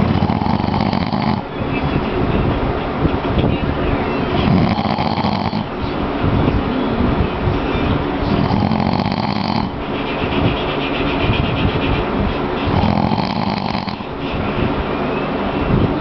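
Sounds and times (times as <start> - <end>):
man snoring heavily: 0.0 - 1.5, 4.4 - 5.7, 8.4 - 9.8, 12.7 - 14.1.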